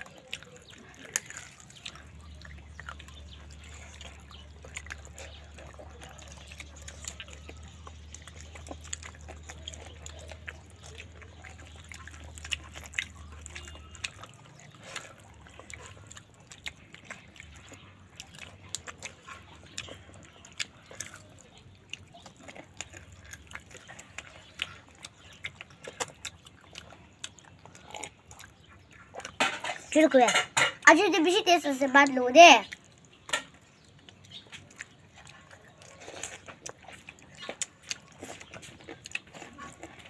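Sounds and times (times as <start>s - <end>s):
person chewing with wet smacks: 0.0s - 40.0s.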